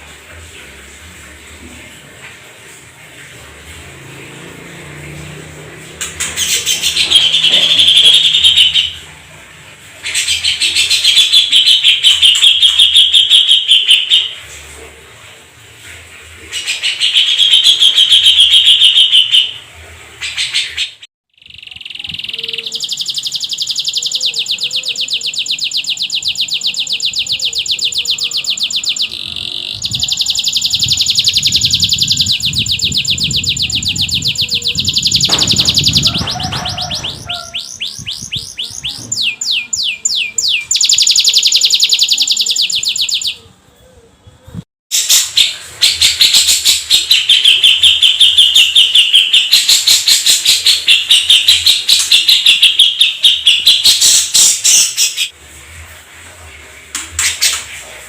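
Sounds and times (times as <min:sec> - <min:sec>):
canary singing trills: 0:06.0 - 0:09.2, 0:10.0 - 0:14.4, 0:16.6 - 0:19.6, 0:20.2 - 0:55.3.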